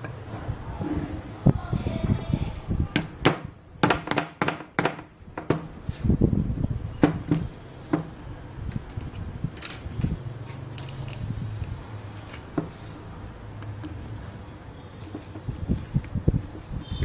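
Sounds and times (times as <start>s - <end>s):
hard objects clicking and knocking: 2.9s - 6.0s, 7.0s - 10.1s.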